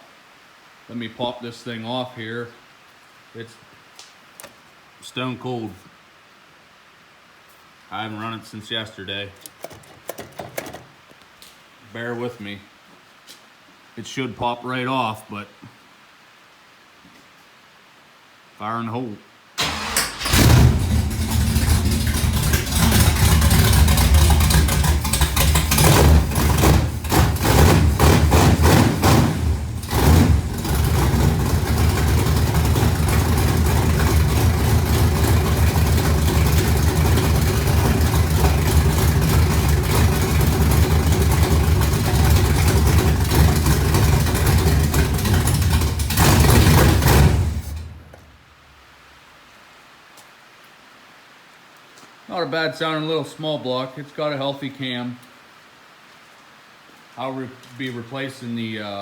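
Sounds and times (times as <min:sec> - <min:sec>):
car engine surging and idling: 0:20.2 - 0:48.2.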